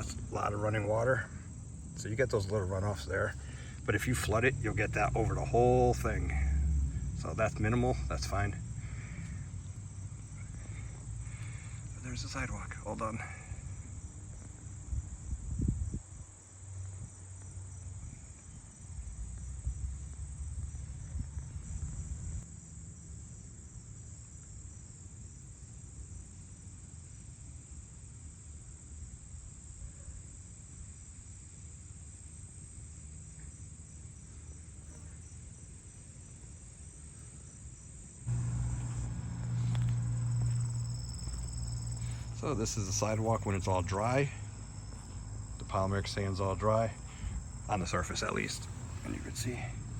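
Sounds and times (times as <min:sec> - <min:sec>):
loud low hum: 0:00.0 - 0:13.8, 0:38.3 - 0:49.9
insects chirring: 0:00.0 - 0:49.9
low rumble: 0:38.3 - 0:49.9.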